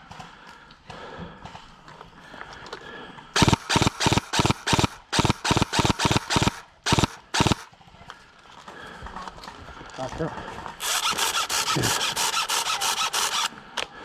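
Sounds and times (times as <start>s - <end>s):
airsoft gun shots: 3.4s - 7.7s.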